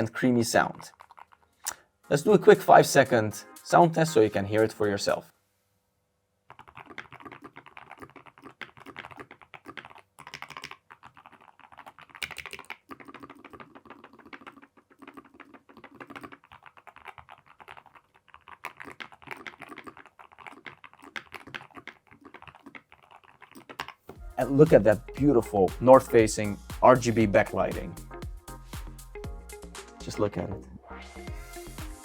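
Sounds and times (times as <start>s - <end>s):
keyboard typing: 0.0s - 5.2s, 6.5s - 25.0s.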